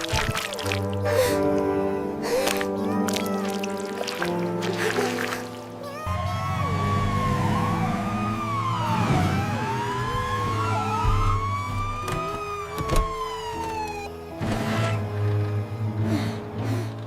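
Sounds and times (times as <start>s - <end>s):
background music: 0.0s - 17.0s
siren wailing: 5.9s - 14.1s.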